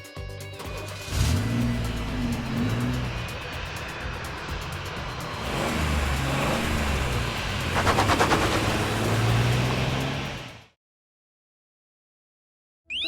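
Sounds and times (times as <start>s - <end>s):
vehicle engine running: 0.7s - 10.8s.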